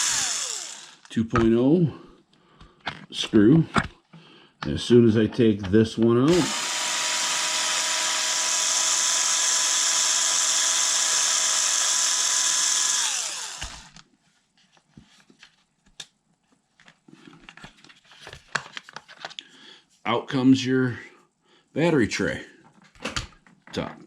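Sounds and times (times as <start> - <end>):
electric screwdriver whining: 0.0 - 1.1, 6.3 - 14.0.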